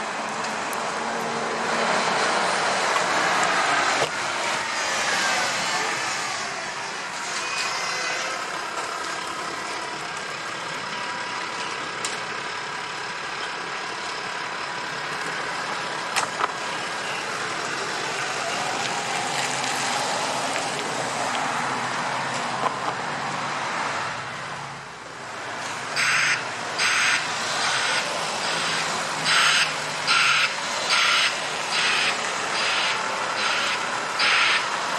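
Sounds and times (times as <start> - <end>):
fire engine running: 0.0 - 34.9
reversing alarm beeps: 26.0 - 34.7.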